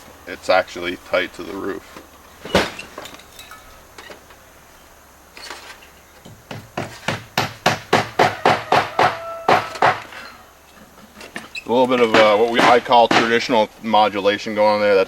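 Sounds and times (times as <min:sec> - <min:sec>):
sharp knock on copper: 0:06.3 - 0:10.1.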